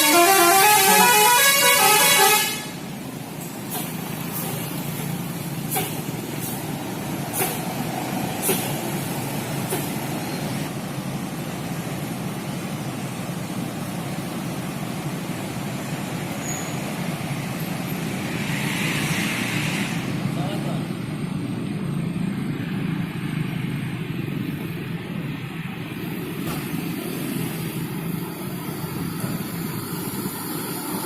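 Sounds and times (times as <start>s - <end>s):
bus diesel engine idling: 0.0s - 18.4s, 20.0s - 31.0s
air brake hisses: 5.7s - 6.6s, 7.3s - 7.7s, 8.4s - 8.8s.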